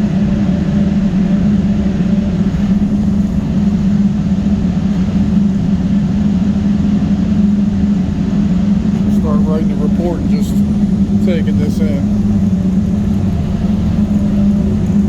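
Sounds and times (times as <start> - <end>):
boiler room machinery rumbling: 0.0 - 15.0.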